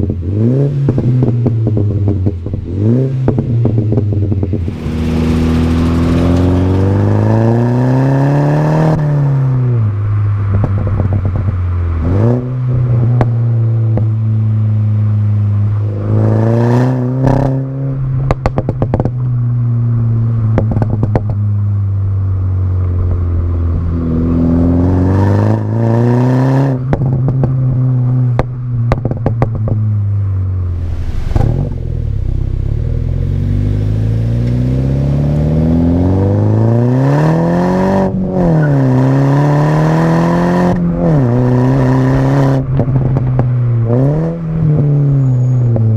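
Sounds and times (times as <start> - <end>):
car engine revving: 0.0 - 45.9
exhaust pops and crackles: 3.3 - 7.9, 10.5 - 11.7, 18.1 - 19.6, 20.4 - 21.6, 26.8 - 30.0, 30.6 - 34.8, 42.6 - 44.8.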